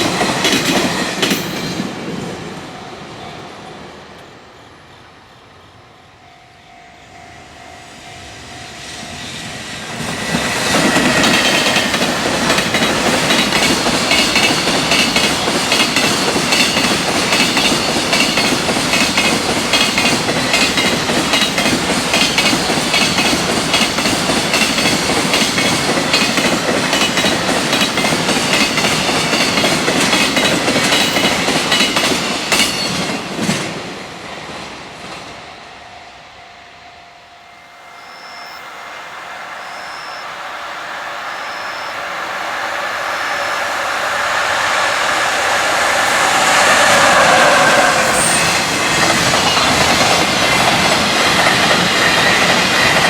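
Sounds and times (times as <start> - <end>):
freight train passing: 0.0 - 53.0
high ringing: 35.5 - 49.8.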